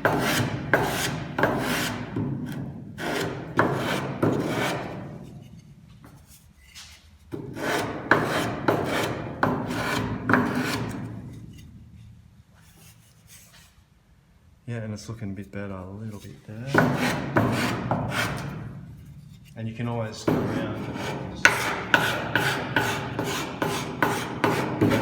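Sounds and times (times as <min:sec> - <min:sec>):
sandpaper rasping on wood: 0:00.0 - 0:02.1, 0:03.0 - 0:05.0, 0:07.6 - 0:11.1, 0:16.6 - 0:18.6, 0:20.2 - 0:25.0.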